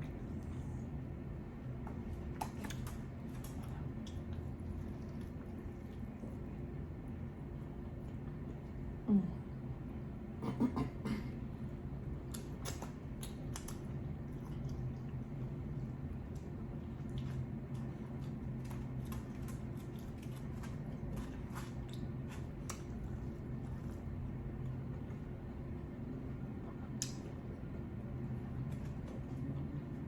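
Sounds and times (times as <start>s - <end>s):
person chewing food: 0.0s - 6.7s, 12.2s - 25.8s
steady low hum: 0.0s - 30.0s
wet mouth clicks: 12.3s - 13.8s.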